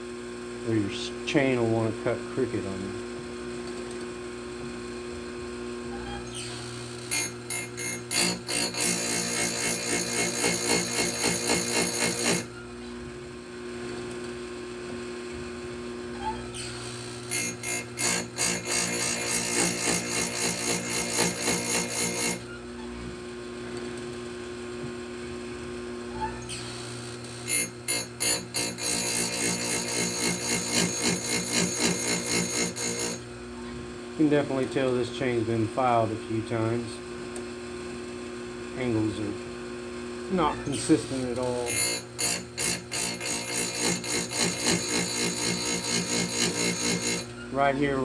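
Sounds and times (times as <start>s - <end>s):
chain grinder motor humming: 5.9s - 12.8s, 16.2s - 22.8s, 26.1s - 33.6s, 40.3s - 48.0s
grinding stone rasping: 6.4s - 12.5s, 16.7s - 22.5s, 26.6s - 33.2s, 40.3s - 47.8s.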